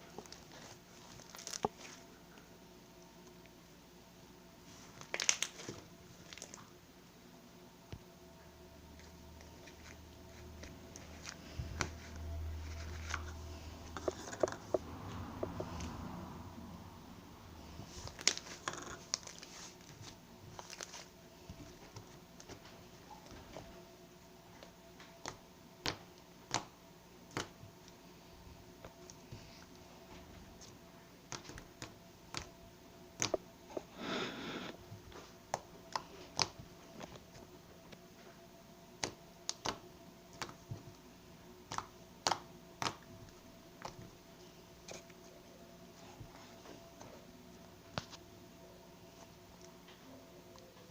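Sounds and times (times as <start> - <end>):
wet slime squelch: 0.0 - 2.1, 4.6 - 6.8, 9.0 - 16.2, 17.5 - 23.7, 28.9 - 32.5
slime clicking and crackling: 5.0 - 6.6, 25.2 - 27.6, 31.3 - 32.5, 35.5 - 36.6, 39.0 - 40.7, 41.6 - 43.1.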